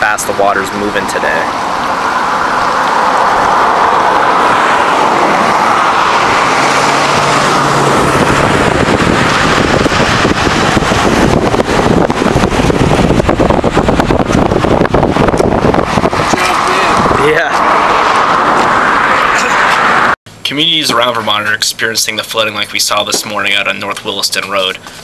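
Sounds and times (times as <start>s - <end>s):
floodwater rushing: 0.0s - 20.2s
wind buffeting microphone: 1.5s - 20.2s.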